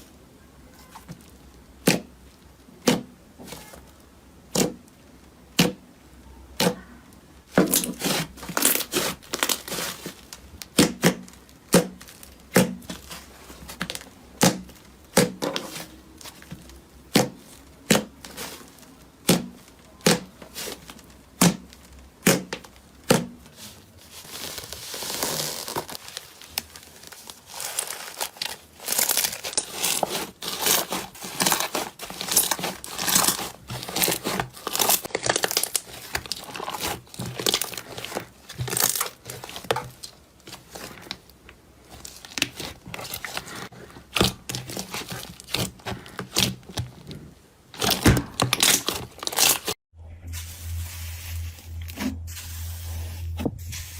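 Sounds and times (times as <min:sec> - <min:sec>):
slime popping and crackling: 0:24.5 - 0:41.3, 0:47.8 - 0:49.8.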